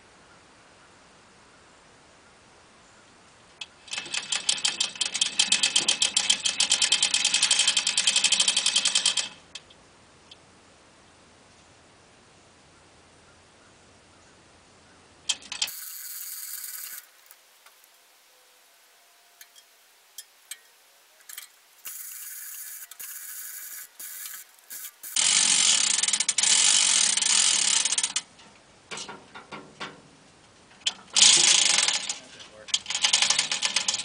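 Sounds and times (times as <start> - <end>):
ratchet clicking: 3.9 - 9.4, 15.3 - 17.4, 21.2 - 28.3, 31.2 - 34.0.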